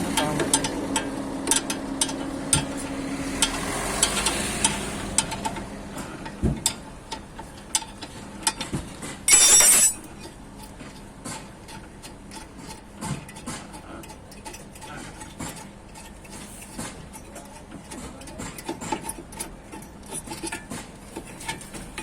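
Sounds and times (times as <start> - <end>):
metal hand tools clinking: 9.3 - 10.1.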